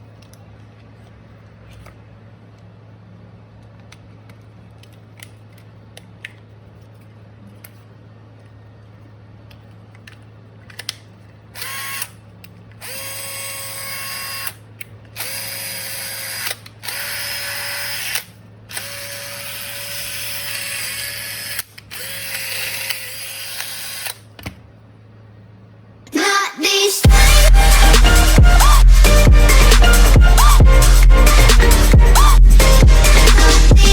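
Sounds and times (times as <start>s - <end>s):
cordless drill running: 11.6s - 12.1s, 12.8s - 14.6s, 15.2s - 24.2s.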